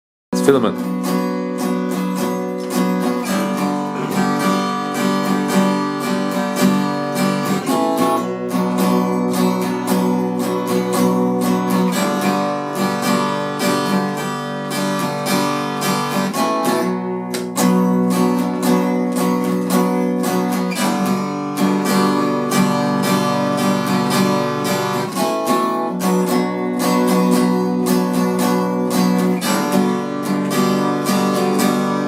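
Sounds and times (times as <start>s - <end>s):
acoustic guitar strumming: 0.4s - 32.0s.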